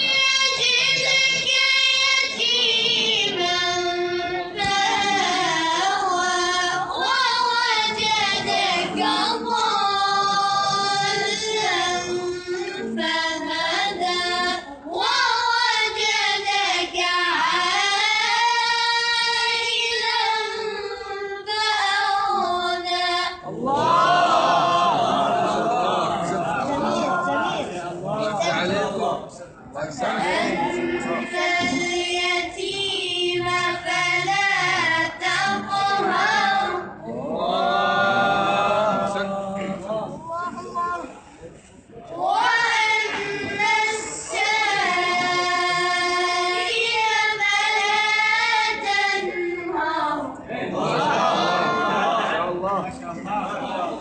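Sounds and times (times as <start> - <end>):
child chanting melodically: 0.0 - 25.8, 30.2 - 37.4, 42.1 - 52.0.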